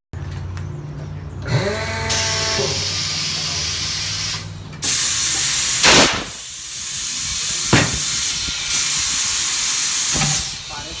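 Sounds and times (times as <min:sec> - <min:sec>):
rushing air hiss: 0:02.5 - 0:11.0.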